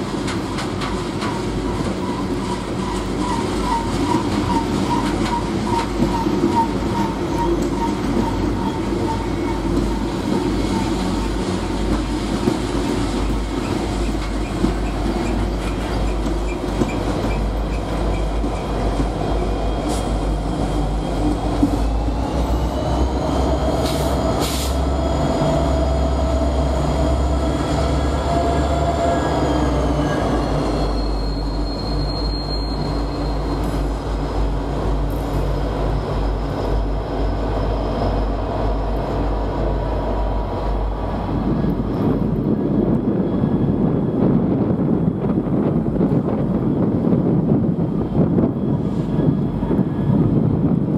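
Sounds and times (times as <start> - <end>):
train wheels rumbling on rail: 0.0 - 50.9
high wheel squeal: 2.0 - 11.4, 25.7 - 34.0, 35.3 - 39.3.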